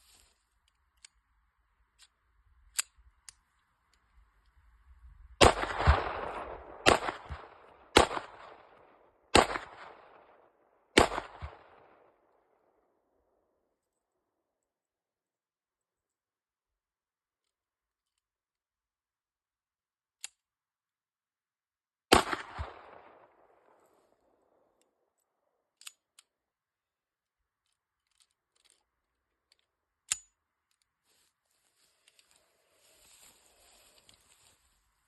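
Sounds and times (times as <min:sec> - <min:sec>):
gun handling clicks: 0:00.6 - 0:01.3, 0:01.9 - 0:04.6, 0:20.1 - 0:20.5, 0:24.8 - 0:26.4, 0:27.6 - 0:30.9
pistol shot with echo: 0:05.4 - 0:10.2, 0:11.0 - 0:12.0, 0:22.1 - 0:23.4.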